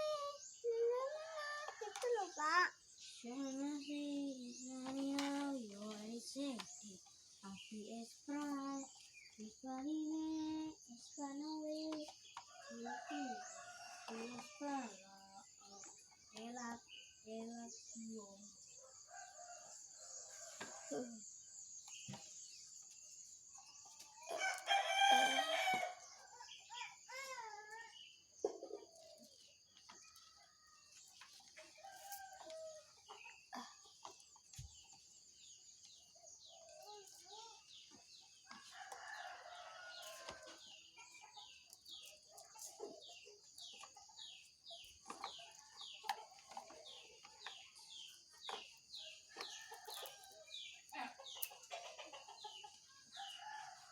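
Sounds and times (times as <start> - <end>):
rooster crowing: 24.3 - 26.0
hens clucking: 50.9 - 53.6.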